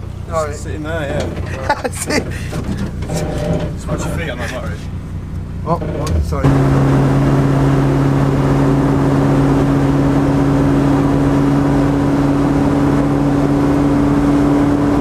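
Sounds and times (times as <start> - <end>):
car engine and road drone: 0.0 - 15.0.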